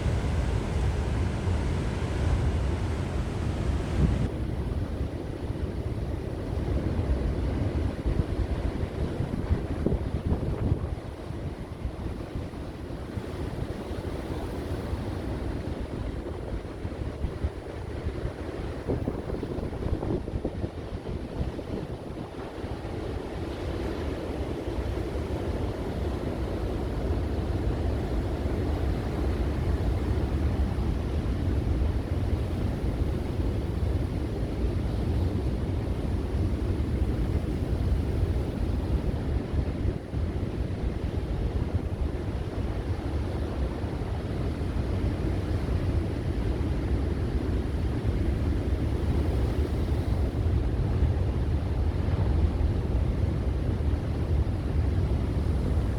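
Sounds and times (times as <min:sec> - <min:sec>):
wind buffeting microphone: 0:00.0 - 0:04.9
sea waves washing on shore: 0:00.0 - 0:55.9.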